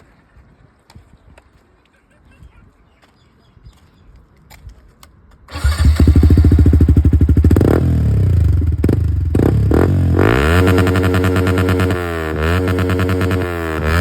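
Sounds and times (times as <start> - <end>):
motorcycle engine revving: 5.5 - 14.0.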